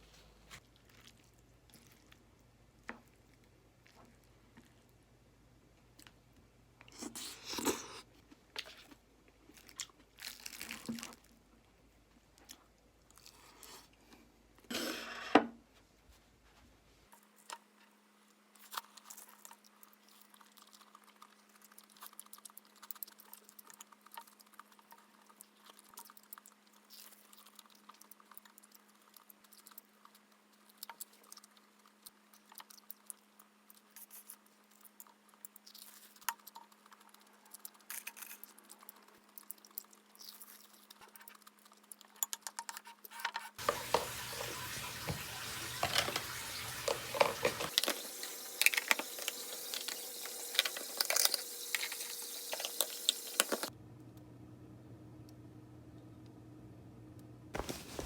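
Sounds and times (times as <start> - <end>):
crunchy chewing: 18.6 - 42.2.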